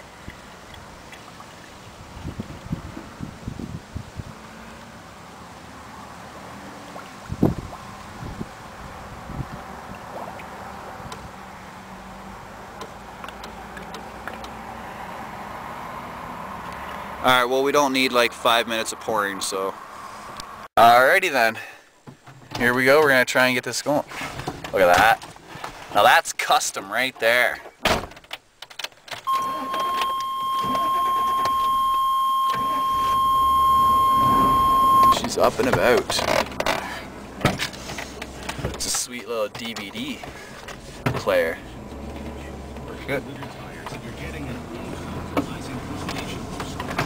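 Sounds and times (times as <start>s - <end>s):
water trickling into engine: 0.0s - 3.3s, 4.5s - 11.5s, 12.8s - 14.8s
steady high electronic beep: 29.3s - 35.3s.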